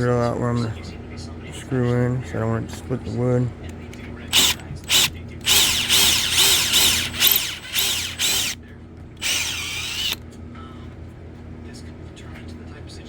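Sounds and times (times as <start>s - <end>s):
power drill boring into wood: 4.3s - 8.6s, 9.2s - 10.2s.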